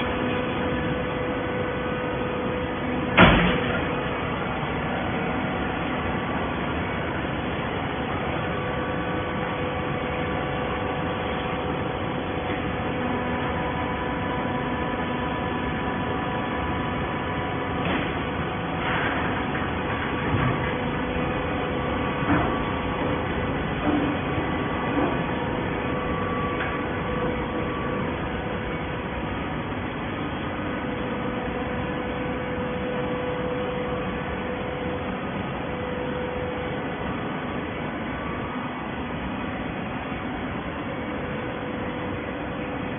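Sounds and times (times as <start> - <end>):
baling machine humming: 0.0 - 42.9
machine clanks and knocks: 3.1 - 4.0, 17.8 - 21.3, 22.2 - 25.5.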